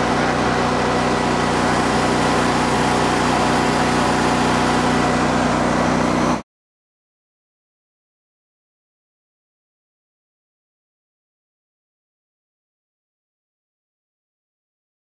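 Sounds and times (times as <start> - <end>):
generator engine humming: 0.0 - 6.4.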